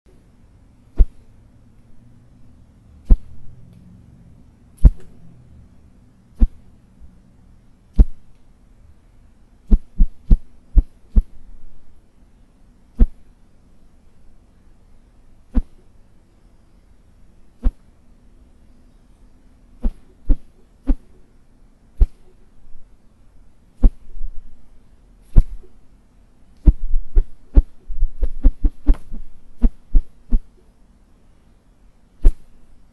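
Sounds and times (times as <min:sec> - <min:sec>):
whooshes through air: 0:03.0 - 0:03.7.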